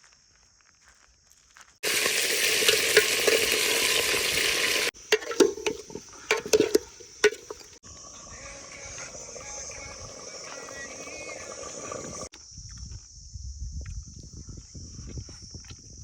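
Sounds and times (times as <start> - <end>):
utensil stirring and scraping pan: 1.8 - 7.8
curry sizzling in hot oil: 1.8 - 12.3.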